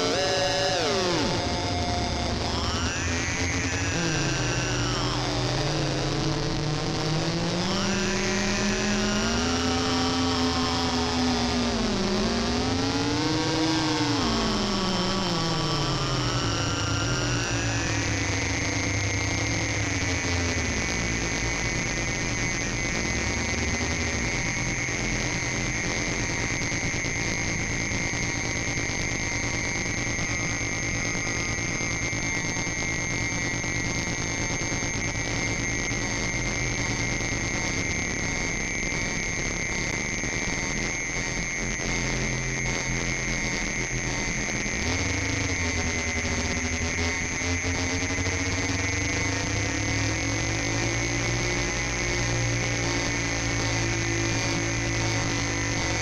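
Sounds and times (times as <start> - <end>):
high shrill synthesizer tones: 0.0 - 6.2
synthesizer drone tones: 0.0 - 24.6
dense buzzing noise: 0.0 - 56.0.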